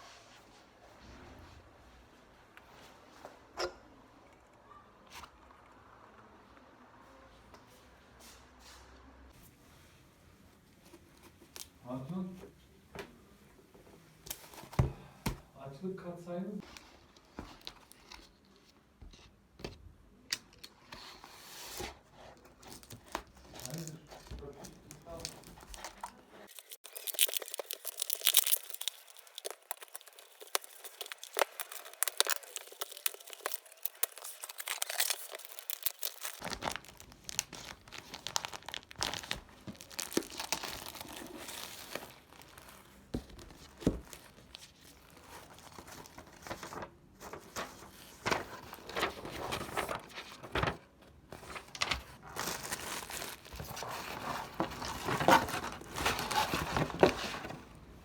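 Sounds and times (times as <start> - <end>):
packaging crinkling and rustling: 16.6 - 18.6, 20.6 - 58.0
packaging tearing: 24.9 - 42.8, 52.3 - 57.5.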